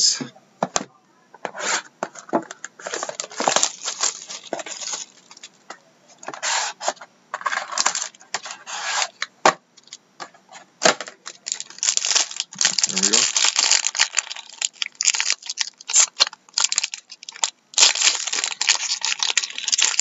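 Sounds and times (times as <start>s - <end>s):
plastic wrap crinkling and tearing: 2.8s - 5.6s, 7.5s - 8.5s, 11.2s - 20.0s.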